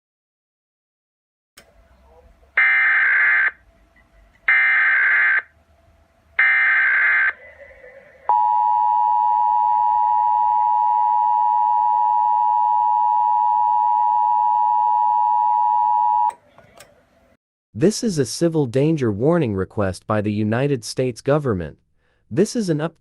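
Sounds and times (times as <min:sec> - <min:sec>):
two-tone attention signal: 0:08.3 - 0:16.3.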